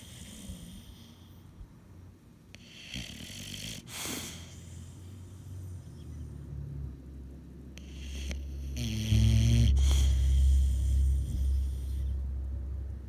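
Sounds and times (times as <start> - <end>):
dog snoring: 0.0 - 1.5, 2.5 - 6.4, 7.8 - 12.2
breathy hissing breaths: 0.0 - 1.6, 2.6 - 6.2, 7.8 - 12.2.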